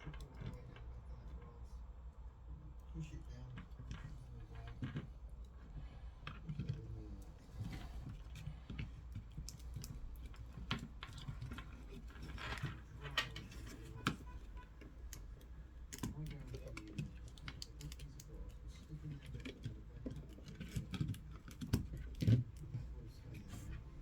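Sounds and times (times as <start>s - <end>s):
low steady hum: 0.0s - 24.0s
small tools clicking and tapping: 8.0s - 23.0s.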